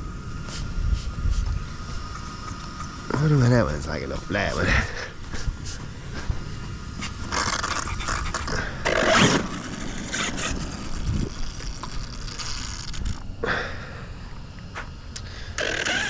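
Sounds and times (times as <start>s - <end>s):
radio-controlled car running on asphalt: 5.9s - 13.4s, 15.5s - 16.0s
scraping rasping bursts: 7.0s - 13.2s, 15.6s - 16.0s.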